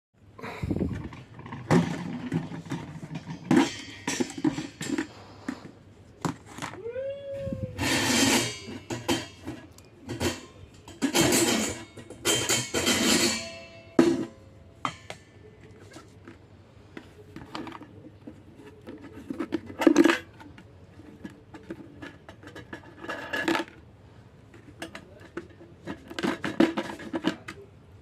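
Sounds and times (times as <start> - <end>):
scraping ringing metal rattles: 10.1 - 15.0.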